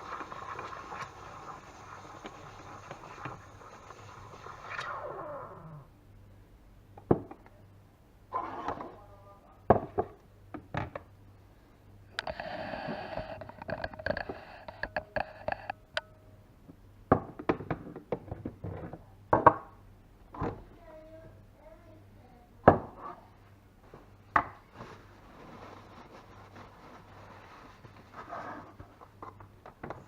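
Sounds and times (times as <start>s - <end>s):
steam wand hiss: 0.0s - 4.9s.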